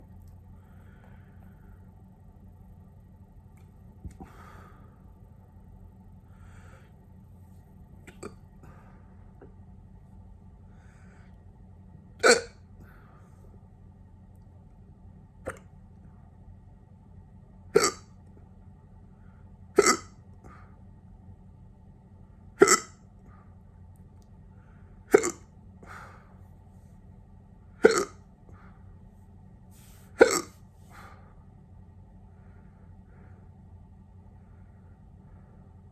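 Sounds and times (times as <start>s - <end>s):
soft breathing: 0.2s - 2.2s, 4.0s - 11.6s, 12.7s - 13.6s, 24.4s - 25.1s, 25.8s - 27.2s, 28.4s - 35.9s
person hiccuping: 12.2s - 12.6s, 15.4s - 15.7s, 17.7s - 18.1s, 19.8s - 20.2s, 22.6s - 23.0s, 25.1s - 25.5s, 27.8s - 28.2s, 30.1s - 30.6s
soft sound after hiccup: 12.2s - 12.6s, 17.8s - 18.1s, 19.8s - 20.1s, 22.6s - 23.0s, 25.1s - 25.5s, 27.8s - 28.2s, 30.2s - 30.6s.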